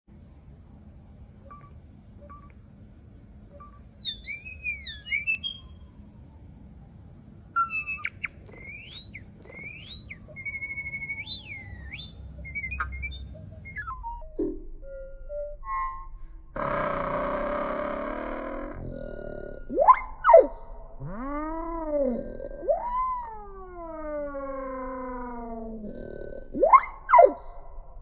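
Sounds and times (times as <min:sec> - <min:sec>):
songbird singing: 0:03.5 - 0:06.1, 0:07.5 - 0:14.2.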